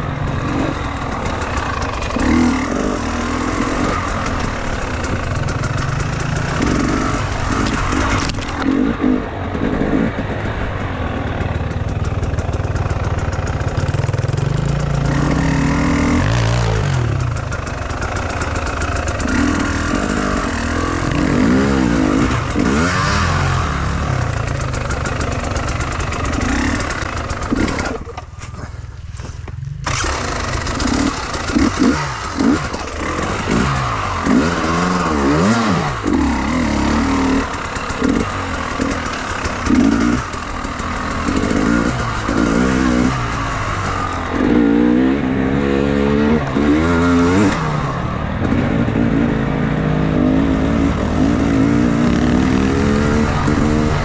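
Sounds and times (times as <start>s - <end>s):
dirt bike engine revving: 0.0s - 54.0s.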